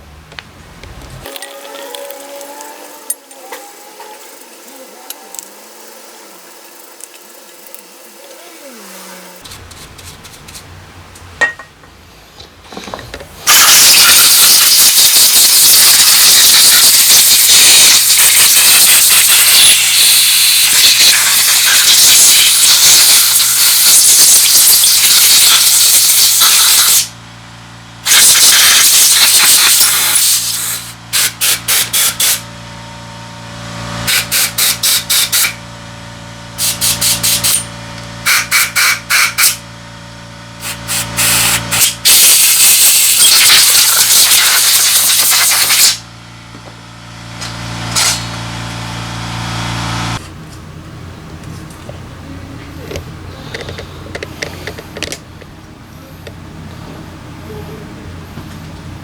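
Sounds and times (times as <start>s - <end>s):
pressurised spray hissing: 13.5s - 27.1s, 28.1s - 32.4s, 40.6s - 46.0s.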